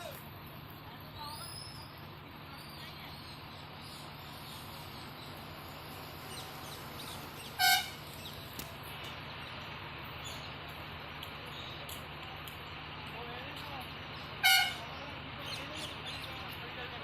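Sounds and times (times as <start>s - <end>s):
outdoor background noise: 0.0s - 17.0s
vehicle horn toot: 7.6s - 8.0s, 14.4s - 14.9s.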